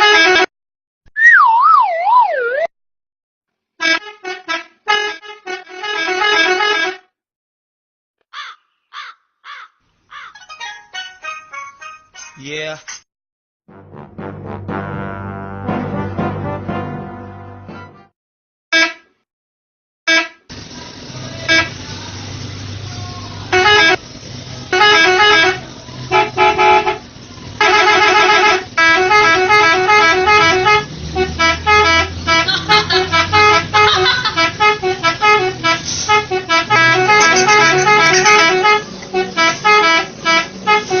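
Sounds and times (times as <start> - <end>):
tuned air horns playing melody: 0.0 - 0.5, 3.8 - 7.0, 13.7 - 18.0, 21.4 - 21.8, 23.5 - 24.0, 24.7 - 41.0
bus engine running: 3.8 - 7.1, 13.8 - 18.1, 20.1 - 41.0.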